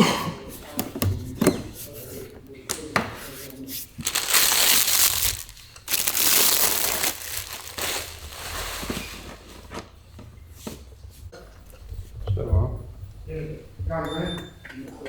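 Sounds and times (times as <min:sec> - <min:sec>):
packaging wrap crinkling: 0:04.0 - 0:09.9.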